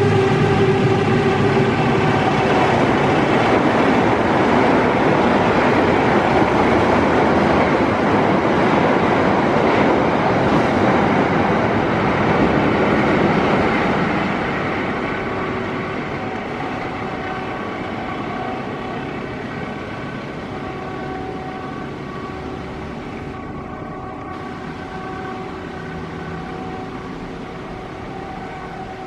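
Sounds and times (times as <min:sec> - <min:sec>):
train horn: 0:00.0 - 0:29.0
train rumbling on rails: 0:00.0 - 0:29.0.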